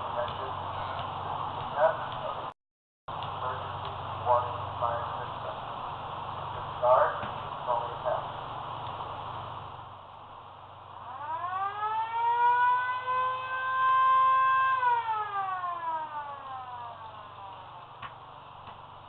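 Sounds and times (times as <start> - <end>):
warning siren wailing: 11.0 - 18.0.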